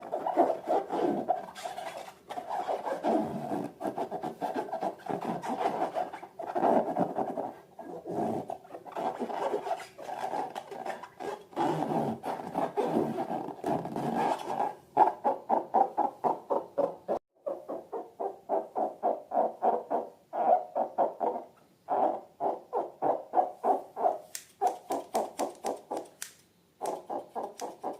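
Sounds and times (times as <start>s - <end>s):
rubber balloons squeaking: 0.0s - 17.0s, 26.8s - 27.9s.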